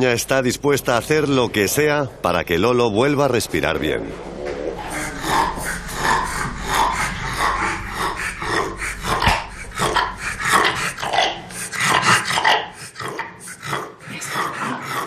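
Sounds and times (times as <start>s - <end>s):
dog breathing noisily: 4.8s - 15.0s.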